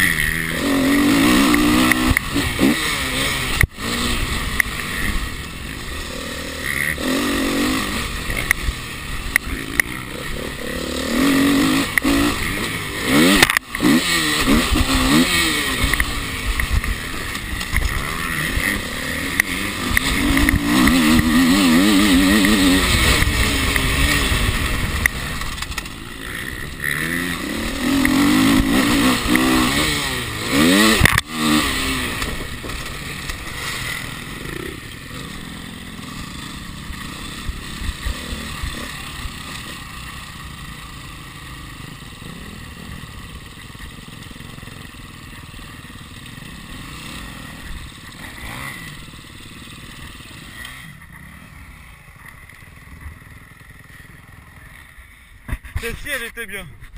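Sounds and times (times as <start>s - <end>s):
dirt bike engine revving: 0.0s - 56.6s.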